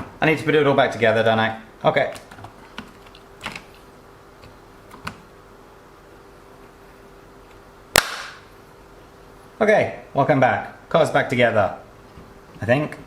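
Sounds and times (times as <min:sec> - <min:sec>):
faint steady hum: 0:00.0 - 0:13.0
sharp knock: 0:08.0 - 0:08.4.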